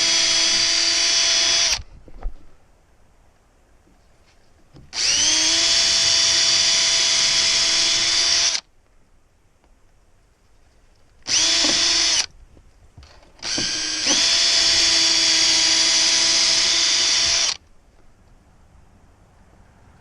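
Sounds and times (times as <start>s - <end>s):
power drill drilling: 0.0s - 1.8s, 4.9s - 8.6s, 11.3s - 12.3s, 13.3s - 17.6s.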